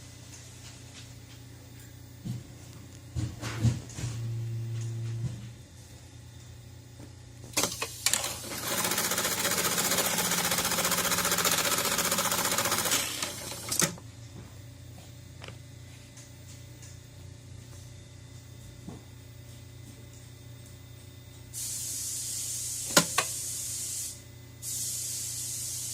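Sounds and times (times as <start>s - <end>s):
low machine hum: 0.0s - 21.6s
sewing machine clicks: 7.6s - 14.0s
sewing machine stitching: 7.6s - 14.0s.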